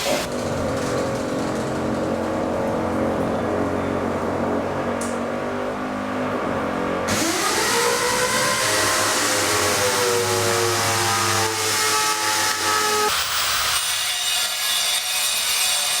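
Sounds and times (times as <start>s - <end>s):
motor spinning up whine: 7.1s - 13.1s.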